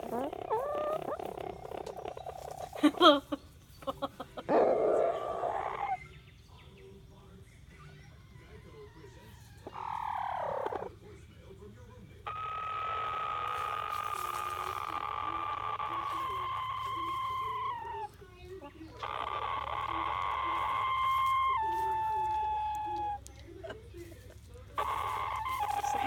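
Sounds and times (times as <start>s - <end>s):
rooster calling: 0.0s - 3.2s, 4.4s - 6.0s, 8.2s - 11.0s, 12.2s - 24.0s, 24.7s - 26.0s.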